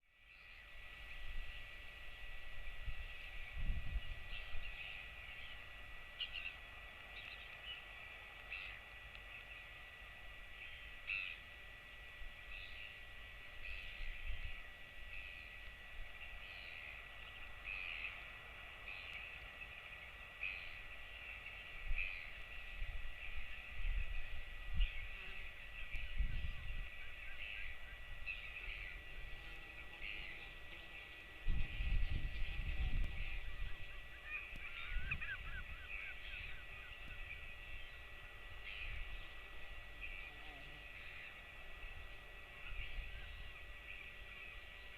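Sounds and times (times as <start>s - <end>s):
faint steady whine: 0.0s - 44.9s
wind rumbling on microphone: 0.5s - 44.9s
bird chirping: 31.8s - 44.9s.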